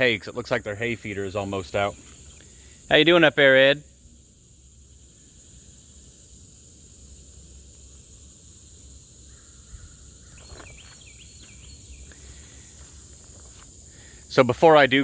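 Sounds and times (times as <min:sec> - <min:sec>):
crickets chirping: 0:00.0 - 0:15.0
bird chirping calls: 0:09.4 - 0:12.6.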